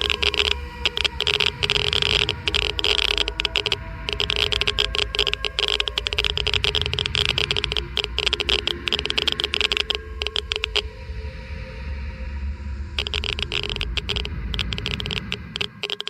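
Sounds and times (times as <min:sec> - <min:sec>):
geiger counter clicking: 0:00.0 - 0:10.9, 0:13.0 - 0:16.0.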